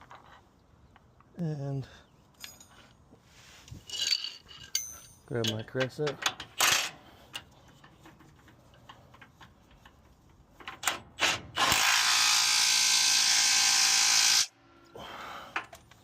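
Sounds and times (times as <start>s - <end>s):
hand tools clinking: 2.3s - 3.0s, 3.7s - 10.8s
small power tool running: 11.6s - 14.5s.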